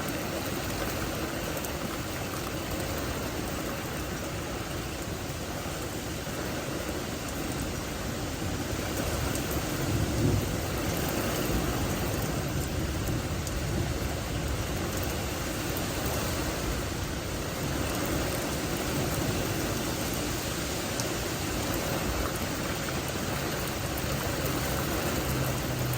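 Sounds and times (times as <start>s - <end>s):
heavy rain falling: 0.0s - 25.9s
thunder rumbling: 8.8s - 19.8s.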